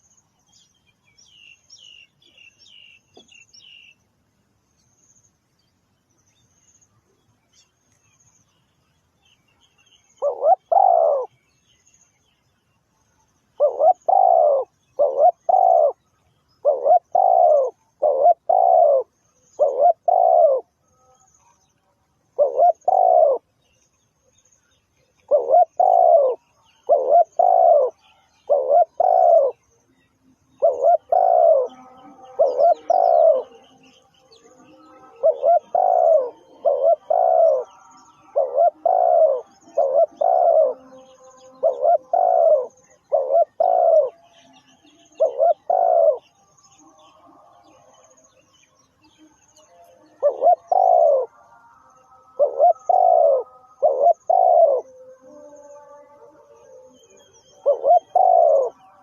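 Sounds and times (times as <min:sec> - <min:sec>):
dove cooing: 0:10.1 - 0:11.4, 0:13.6 - 0:16.0, 0:16.6 - 0:20.8, 0:22.3 - 0:23.5, 0:25.2 - 0:29.7, 0:30.5 - 0:48.2, 0:49.7 - 0:59.0.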